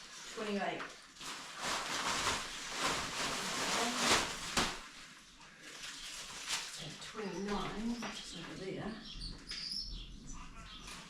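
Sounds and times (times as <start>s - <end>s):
packaging rustling and clattering: 0.0s - 7.9s.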